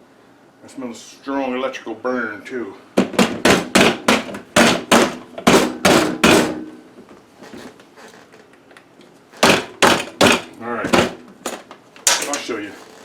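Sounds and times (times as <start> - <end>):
heavy ringing knocks: 9.4 - 11.2.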